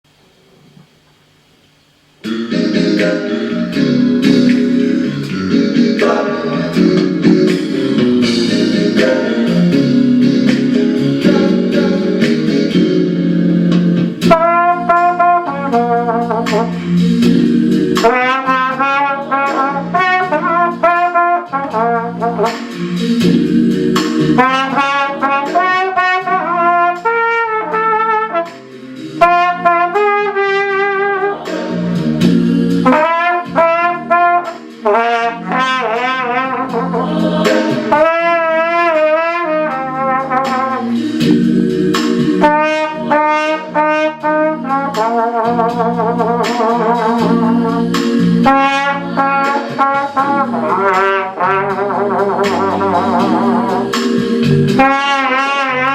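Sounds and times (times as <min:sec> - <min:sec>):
keyboard chords: 0:02.2 - 0:55.9
flugelhorn slow melody: 0:08.2 - 0:22.6, 0:24.3 - 0:41.6, 0:42.4 - 0:53.9, 0:54.7 - 0:55.9.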